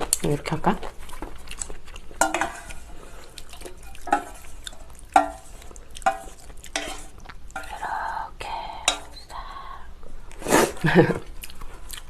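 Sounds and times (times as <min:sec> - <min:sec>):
utensils clinking against bowl: 0:02.2 - 0:07.8.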